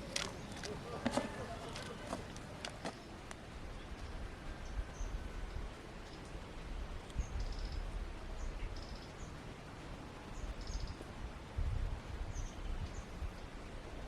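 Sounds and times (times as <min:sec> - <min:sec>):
small birds chirping: 0:00.0 - 0:06.3, 0:07.1 - 0:09.4, 0:10.3 - 0:11.1, 0:12.3 - 0:13.5.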